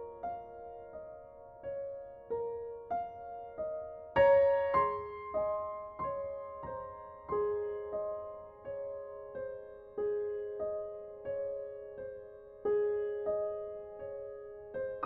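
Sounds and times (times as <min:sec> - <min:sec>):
gentle piano music: 0:00.0 - 0:15.0.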